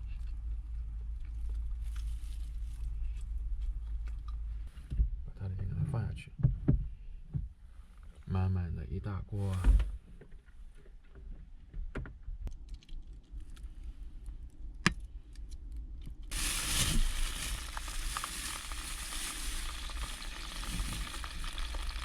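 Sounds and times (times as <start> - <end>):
food sizzling in hot oil: 16.3 - 22.0.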